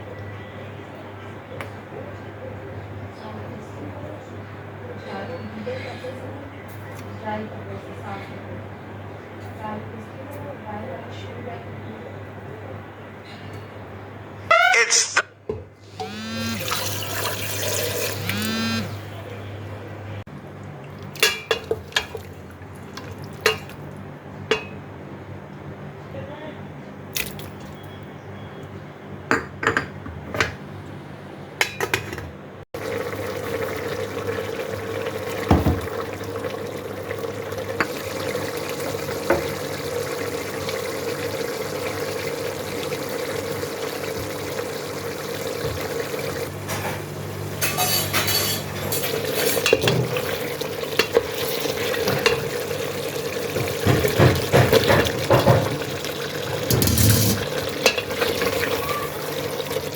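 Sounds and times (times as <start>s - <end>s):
food sizzling in a pot: 15.9s - 19.0s, 32.8s - 46.5s, 47.8s - 59.9s
metal spoon clinking on pot: 21.2s - 22.1s.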